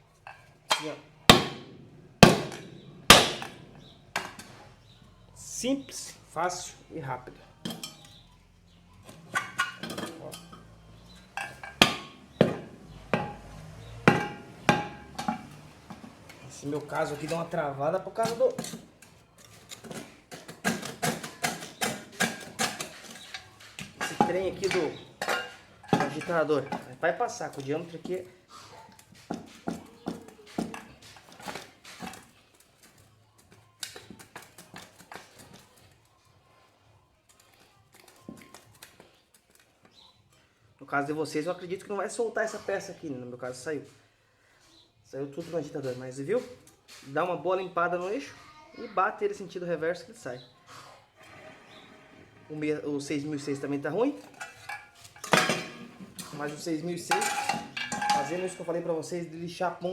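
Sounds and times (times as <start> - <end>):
metal parts knocking and clinking: 9.0 - 13.4, 54.2 - 58.8.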